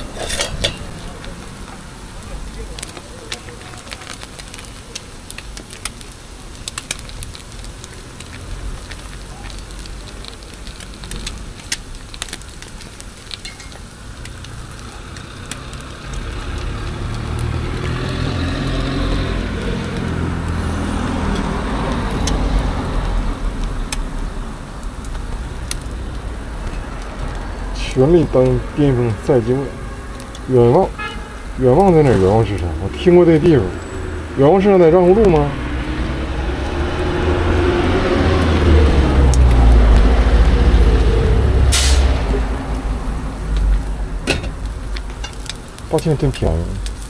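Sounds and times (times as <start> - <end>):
metal utensils clicking: 0.0 - 1.0
food sizzling on a griddle: 0.0 - 47.0
low rumble: 31.4 - 45.6.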